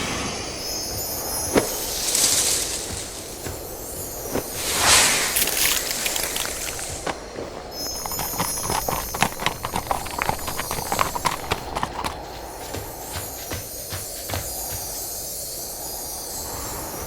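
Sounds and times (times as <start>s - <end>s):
sharp clicks and knocks: 7.8s - 14.8s.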